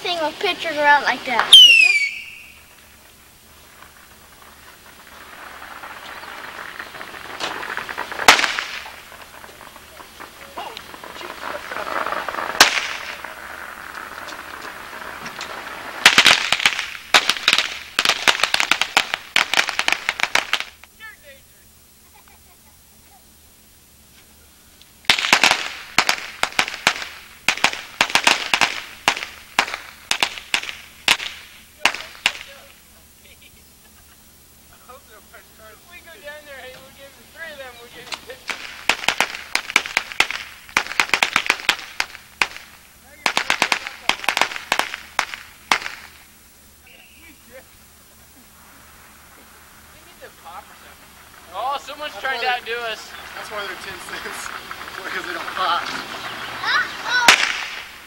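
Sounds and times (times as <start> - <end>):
firecracker bang: 0.0 - 21.0, 25.0 - 32.8, 34.8 - 47.7, 48.4 - 58.0
faint hiss: 0.0 - 58.0
faint crack: 3.7 - 20.9.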